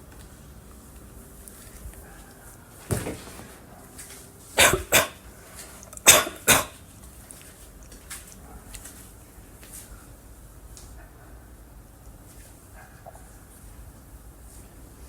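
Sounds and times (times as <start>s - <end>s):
person hiccuping: 4.6s - 5.2s, 6.0s - 6.8s.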